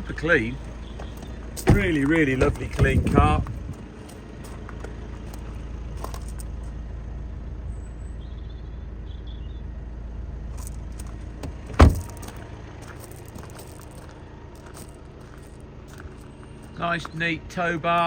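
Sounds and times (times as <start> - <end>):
low rumble: 0.6 - 6.7
car door shutting: 1.0 - 3.5, 11.4 - 12.4.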